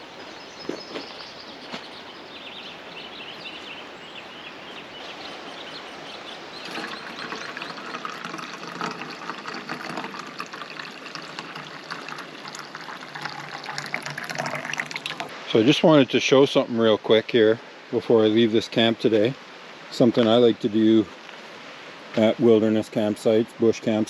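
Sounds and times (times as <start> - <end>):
bird chirps: 0.0 - 8.0
creek water running: 0.0 - 24.0.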